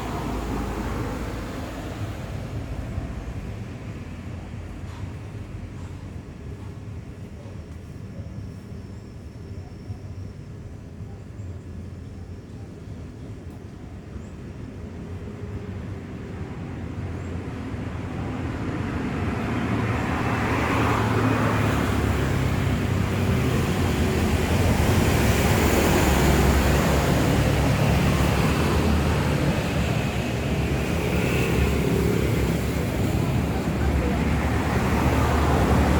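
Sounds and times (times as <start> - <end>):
road traffic passing: 0.0 - 7.4, 14.6 - 35.9.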